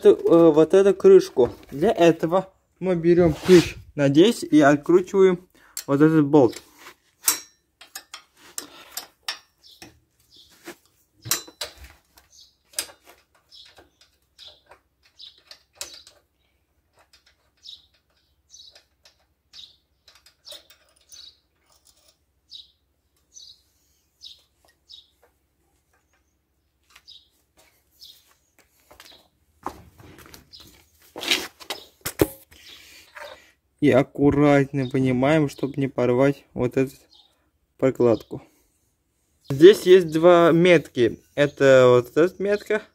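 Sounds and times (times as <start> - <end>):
wrench clinking on bolts: 7.2 - 9.9, 11.3 - 11.8.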